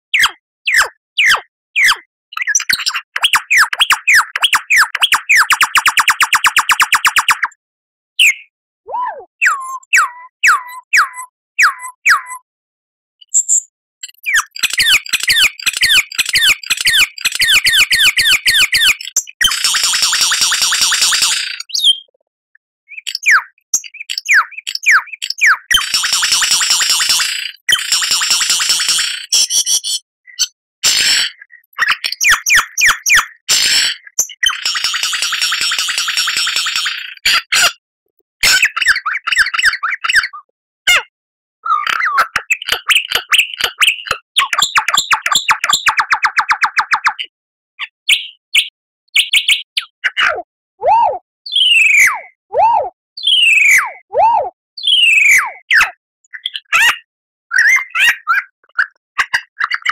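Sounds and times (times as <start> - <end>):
lyrebird singing: 0.2 - 7.5, 8.2 - 12.4, 13.2 - 22.1, 22.9 - 30.6, 31.4 - 37.7, 41.7 - 50.0, 50.8 - 53.9, 54.8 - 59.9
bird trilling: 8.2 - 12.4, 14.2 - 22.1.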